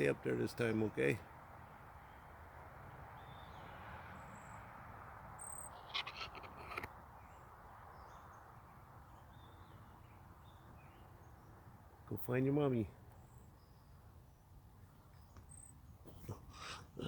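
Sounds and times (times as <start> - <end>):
outdoor background noise: 0.0 - 17.0
faint high bird chirps: 5.4 - 8.4.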